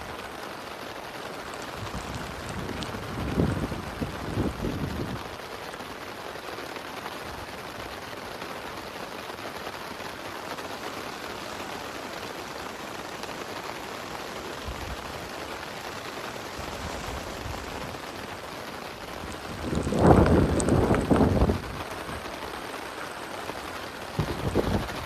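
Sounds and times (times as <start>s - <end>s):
steady rain hiss: 0.0s - 25.0s
low wind rumble: 19.2s - 22.4s, 24.2s - 25.0s.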